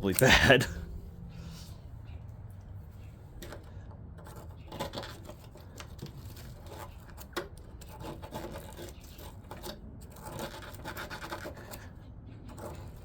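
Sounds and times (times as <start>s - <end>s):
hand tools scraping metal: 4.2s - 13.0s.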